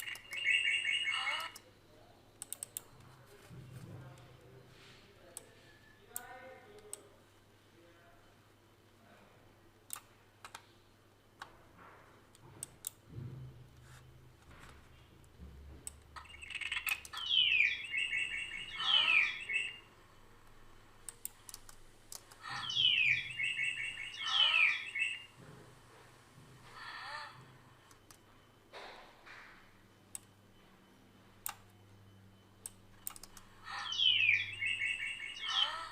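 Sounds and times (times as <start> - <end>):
bird chirp sound effect: 0.0 - 1.6, 16.2 - 19.8, 22.4 - 25.4, 33.7 - 35.9
computer mouse clicks: 2.4 - 3.2, 6.1 - 7.1, 9.9 - 10.7, 12.3 - 13.0, 15.8 - 17.3, 21.0 - 22.4, 30.1 - 30.3, 31.4 - 31.7, 32.6 - 33.5.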